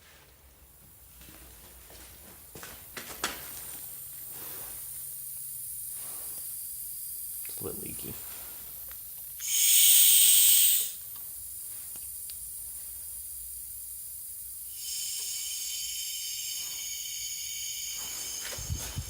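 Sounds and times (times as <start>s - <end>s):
compressed air hissing: 3.4s - 19.0s.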